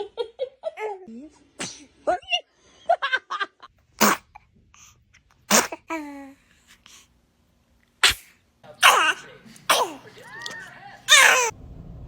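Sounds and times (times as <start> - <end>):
baby sneezing: 1.6 - 2.0, 4.0 - 4.4, 5.5 - 6.2, 8.0 - 10.2, 11.1 - 11.5
baby vocal sound: 5.5 - 6.8, 8.0 - 11.5.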